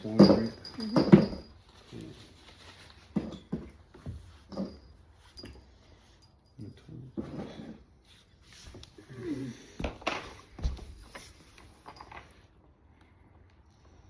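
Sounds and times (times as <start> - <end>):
metal parts and tools clattering: 0.0 - 1.6, 10.1 - 12.4.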